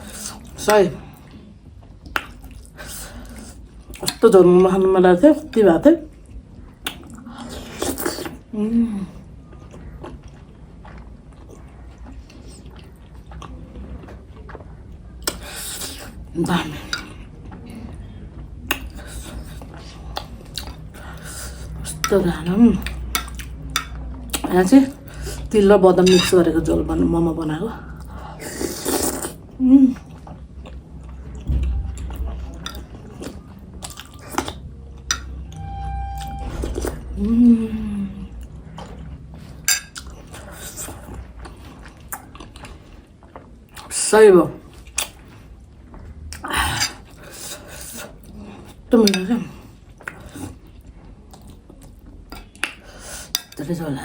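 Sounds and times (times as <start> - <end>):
chewing dumplings: 0.0 - 35.4, 38.2 - 53.7
chewing and slurping: 27.8 - 35.4, 38.4 - 44.0
brief loud noise: 35.5 - 37.2.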